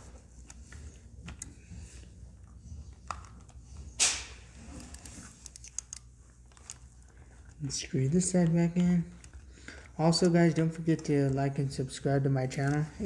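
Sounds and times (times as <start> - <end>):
low steady hum: 0.0 - 13.0
short scuff: 4.0 - 4.4.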